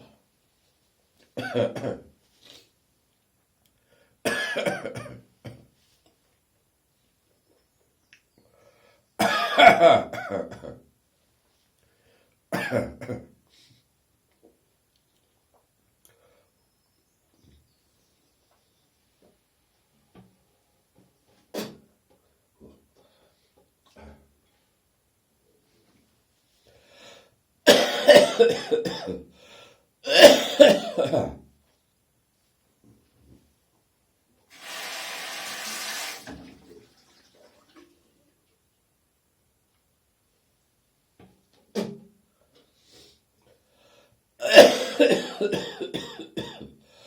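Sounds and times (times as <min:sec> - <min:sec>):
person coughing: 0:01.4 - 0:02.1, 0:04.3 - 0:05.6, 0:09.2 - 0:10.8, 0:12.6 - 0:13.3, 0:27.7 - 0:29.2, 0:30.1 - 0:31.4, 0:44.4 - 0:46.7.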